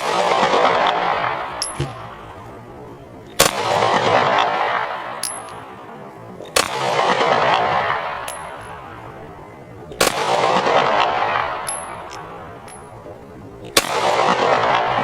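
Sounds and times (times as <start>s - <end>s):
pistol shots with echo: 0.0s - 2.2s, 3.4s - 5.8s, 6.5s - 9.0s, 9.9s - 12.9s, 13.7s - 15.0s.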